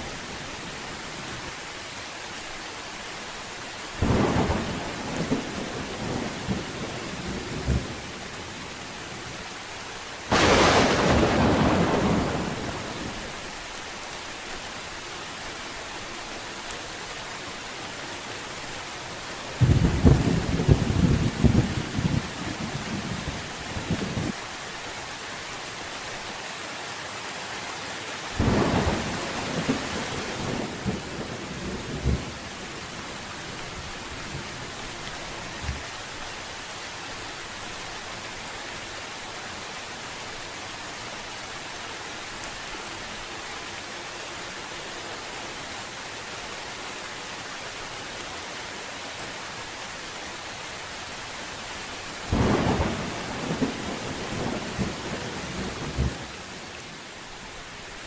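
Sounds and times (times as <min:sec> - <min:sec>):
steady rain: 0:00.0 - 0:58.0
thunder rumbling: 0:10.3 - 0:13.3, 0:19.6 - 0:24.4, 0:28.4 - 0:32.5, 0:52.3 - 0:56.3.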